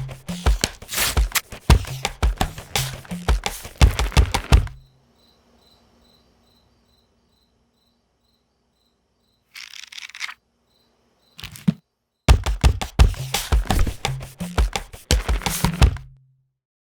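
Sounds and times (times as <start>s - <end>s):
paper rustling: 0.0s - 4.8s, 9.6s - 10.4s, 11.4s - 11.8s, 12.4s - 16.1s
rhythmic paper taps and snaps: 0.0s - 4.8s, 12.3s - 16.1s.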